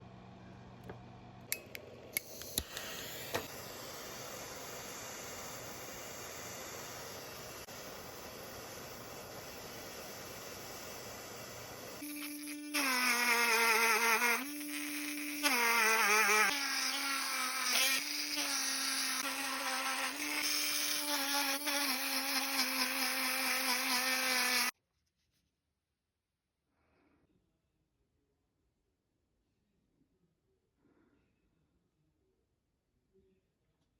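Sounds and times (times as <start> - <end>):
steady hiss: 2.3 - 12.9
rotary tool whining on metal: 12.0 - 24.7.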